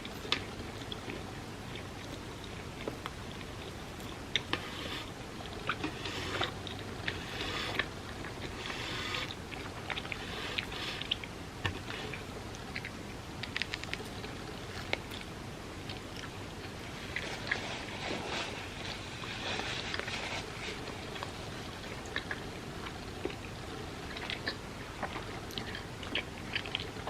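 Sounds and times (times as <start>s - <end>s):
close chewing: 0.0s - 27.0s.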